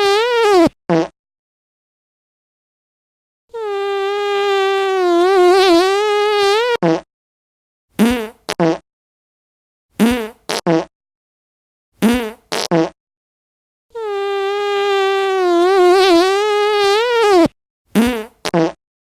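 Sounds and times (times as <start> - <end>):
fart sound effects: 0.0 - 1.2, 3.5 - 7.1, 8.0 - 8.8, 10.0 - 10.9, 12.0 - 13.0, 13.9 - 18.8.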